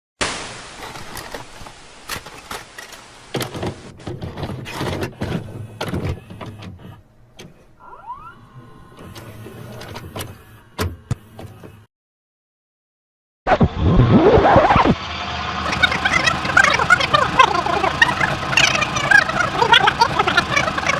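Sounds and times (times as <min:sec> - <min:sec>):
tape mechanism clicks and clunks: 0:00.8 - 0:11.9
motor whirring: 0:04.7 - 0:11.9
rising whine: 0:07.8 - 0:09.8.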